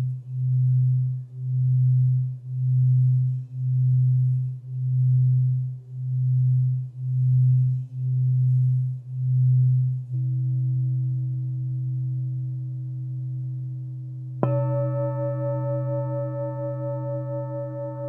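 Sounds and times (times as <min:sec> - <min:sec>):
singing bowl low hum: 0:00.0 - 0:18.0
singing bowl struck and ringing: 0:14.4 - 0:18.0.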